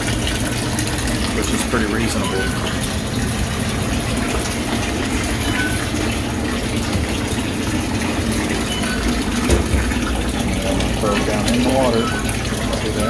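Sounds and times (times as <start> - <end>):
water gushing into sink tank: 0.0 - 13.0.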